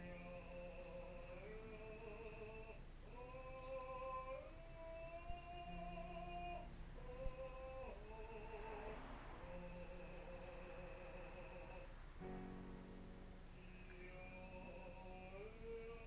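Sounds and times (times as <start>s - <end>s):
faint clicks: 2.2s - 5.9s.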